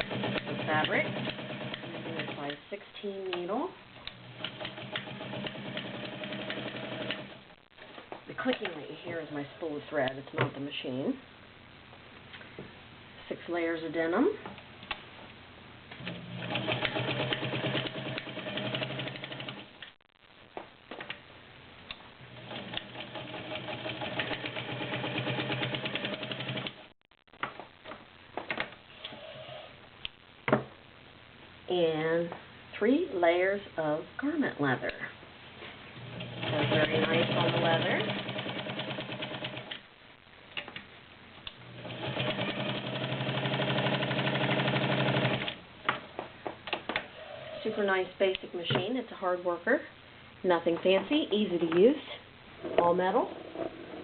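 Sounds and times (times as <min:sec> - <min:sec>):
sewing machine stitching: 0:00.0 - 0:02.5, 0:04.3 - 0:07.4, 0:16.0 - 0:19.7, 0:22.4 - 0:26.8, 0:36.1 - 0:39.7, 0:41.8 - 0:45.6.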